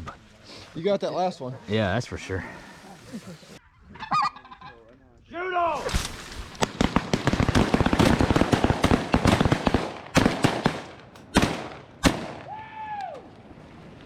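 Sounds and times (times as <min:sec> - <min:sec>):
honk: 0:03.9 - 0:04.8
shotgun fire: 0:05.8 - 0:12.5.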